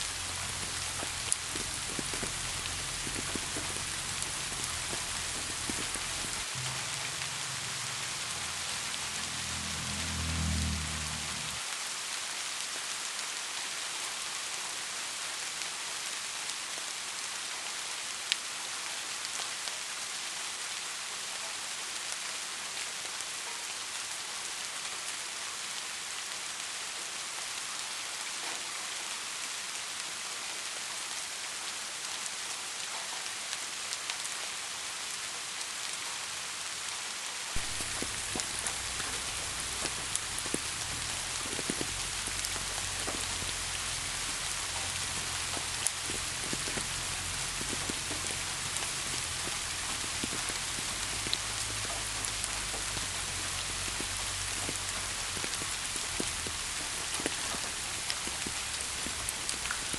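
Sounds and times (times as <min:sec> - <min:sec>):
rain falling: 0:00.0 - 0:59.9
water drops ticking: 0:00.1 - 0:06.8.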